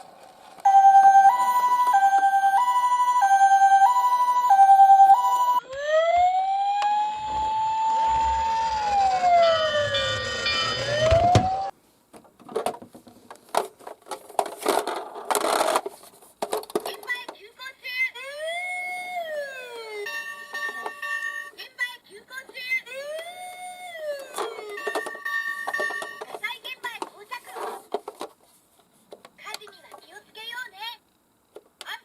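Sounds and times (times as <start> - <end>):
electronic toy siren: 0.7 - 11.7, 18.2 - 21.5, 22.9 - 26.2.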